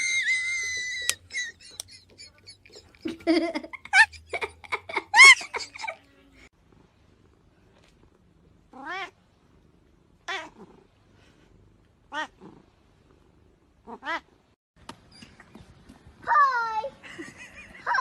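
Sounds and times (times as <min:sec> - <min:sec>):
cat meowing: 0:08.8 - 0:09.2.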